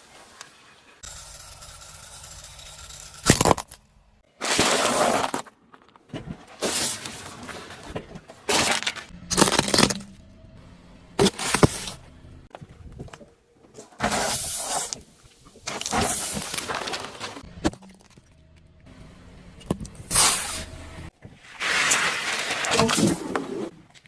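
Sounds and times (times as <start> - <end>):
objects crunching under car tyre: 3.2 - 10.2.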